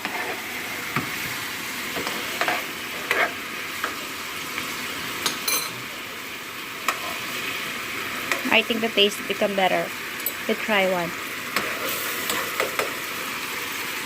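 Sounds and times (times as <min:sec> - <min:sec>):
utensil scraping a pan: 0:00.0 - 0:00.6, 0:02.0 - 0:03.4, 0:11.5 - 0:12.9
meat sizzling in a pan: 0:00.0 - 0:14.0.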